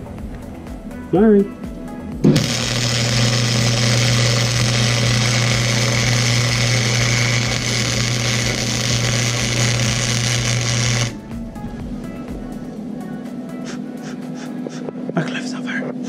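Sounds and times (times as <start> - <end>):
low hum: 2.2 - 15.2
welder hissing crackle: 2.3 - 11.2.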